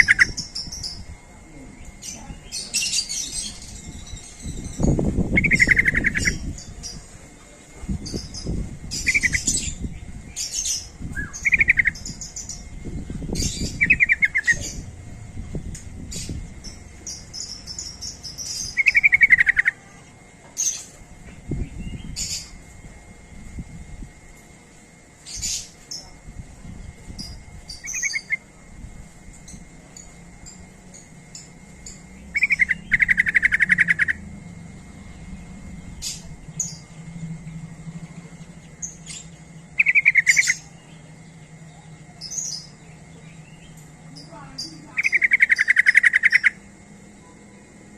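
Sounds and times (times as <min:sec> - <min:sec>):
bird bubbling trills: 0:00.0 - 0:01.1, 0:03.0 - 0:07.0, 0:08.0 - 0:19.8, 0:29.5 - 0:46.7
high bird chirps: 0:00.0 - 0:01.1, 0:02.0 - 0:07.1, 0:08.0 - 0:19.9, 0:27.1 - 0:28.4, 0:29.5 - 0:34.3, 0:35.2 - 0:46.6
low rumbling noise: 0:00.0 - 0:47.9.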